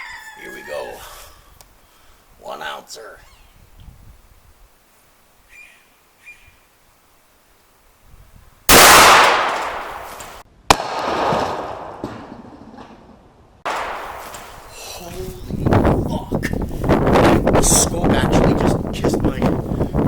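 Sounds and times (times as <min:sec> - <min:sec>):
loud gunshots with echo: 0:08.7 - 0:12.3, 0:13.7 - 0:14.7.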